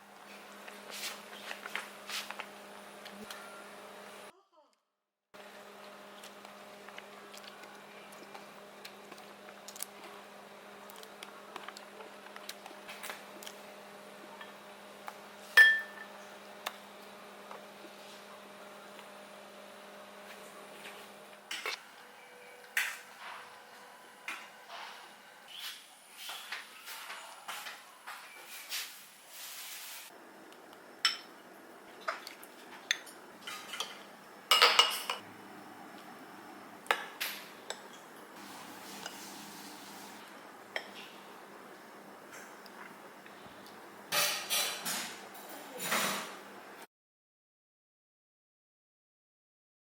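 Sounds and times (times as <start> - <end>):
kitchenware tapping and clinking: 15.6 - 16.1, 32.9 - 35.2
utensils clinking against dishes: 15.6 - 16.1, 32.0 - 35.2, 44.1 - 46.4.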